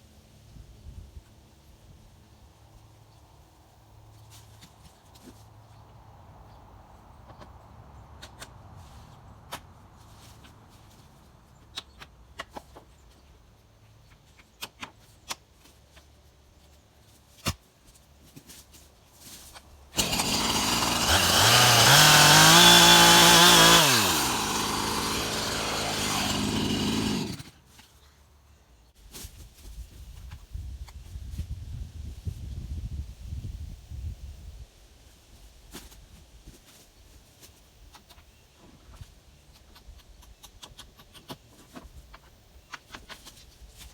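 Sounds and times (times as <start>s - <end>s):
chainsaw engine revving and idling: 20.0s - 27.5s.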